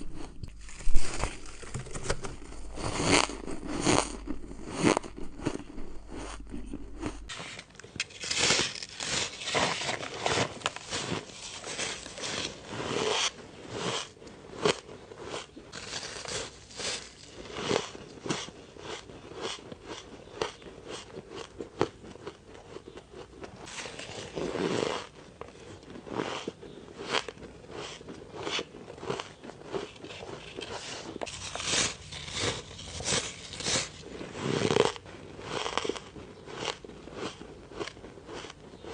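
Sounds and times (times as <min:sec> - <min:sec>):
person crunching ice: 0:00.0 - 0:38.9.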